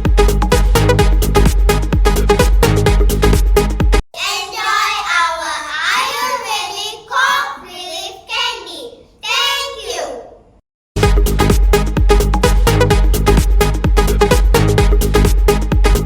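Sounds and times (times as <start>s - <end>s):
child singing: 4.2s - 10.2s.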